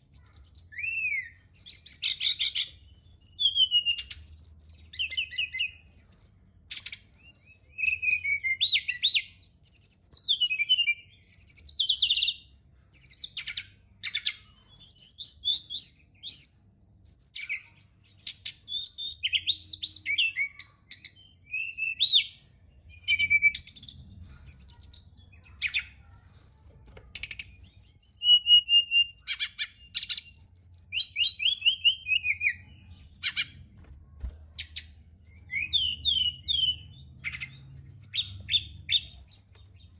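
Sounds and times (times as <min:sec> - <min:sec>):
bird singing chirps and trills: 0:00.0 - 0:39.9.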